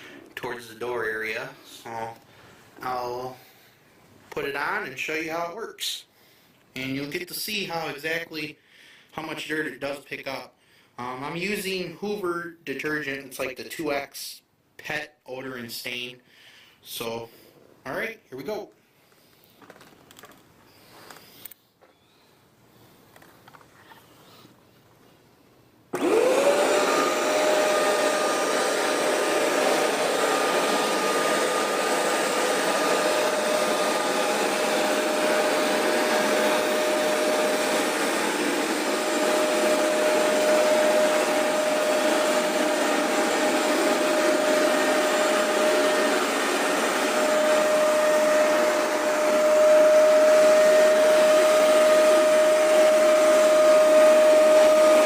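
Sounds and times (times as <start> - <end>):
carpet cleaner motor whine: 25.9 - 55.0.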